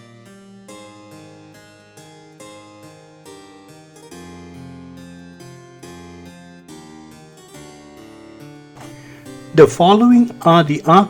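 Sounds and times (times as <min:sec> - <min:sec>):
keyboard playing sharp notes: 0:08.8 - 0:11.0.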